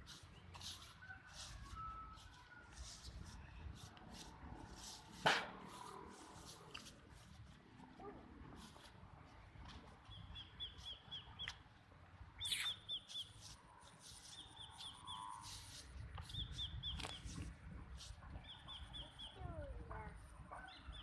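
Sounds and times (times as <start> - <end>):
bird chirping: 10.0 - 11.6, 12.4 - 17.4.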